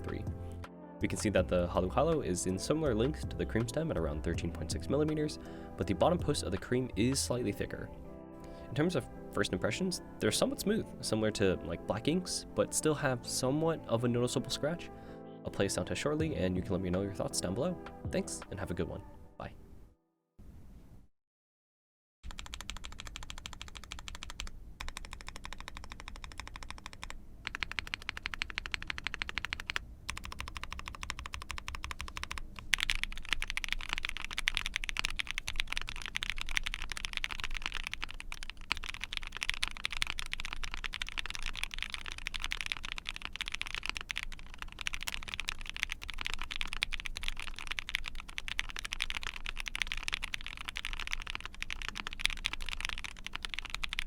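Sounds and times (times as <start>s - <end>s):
typing on mechanical keyboard: 22.3s - 54.0s.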